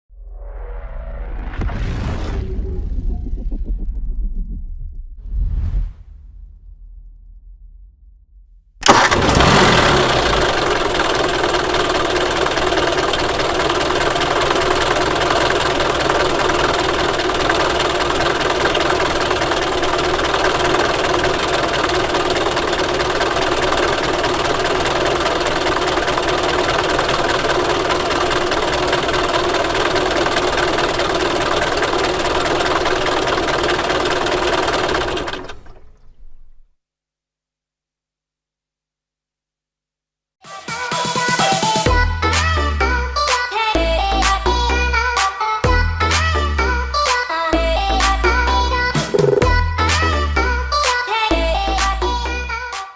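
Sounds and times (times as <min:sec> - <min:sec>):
bus engine starting and idling: 0:08.8 - 0:36.7, 0:47.8 - 0:52.6.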